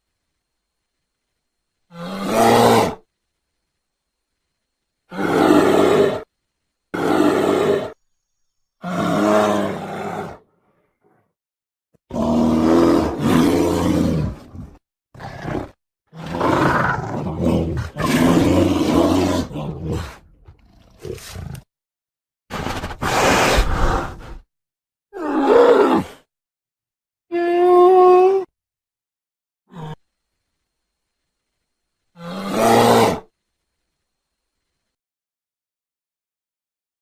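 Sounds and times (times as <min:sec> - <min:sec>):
bear growling and roaring: 0:01.9 - 0:03.0, 0:05.1 - 0:06.3, 0:06.9 - 0:08.0, 0:08.8 - 0:11.2, 0:12.0 - 0:21.7, 0:22.5 - 0:24.4, 0:25.2 - 0:26.3, 0:29.7 - 0:30.0, 0:32.2 - 0:33.3.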